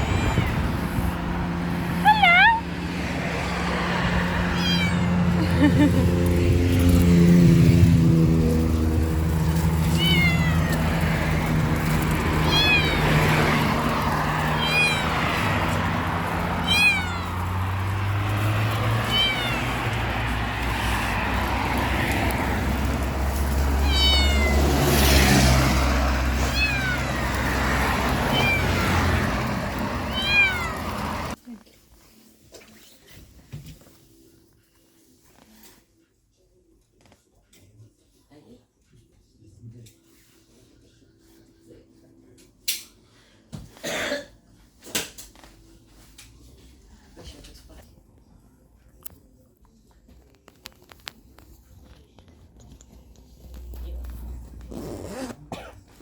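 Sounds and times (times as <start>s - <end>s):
kittens meowing: 0.0s - 0.8s, 4.5s - 5.4s, 9.8s - 11.1s, 12.4s - 13.8s, 14.4s - 15.8s, 16.6s - 17.5s, 18.8s - 20.2s, 23.7s - 24.8s, 26.3s - 31.4s.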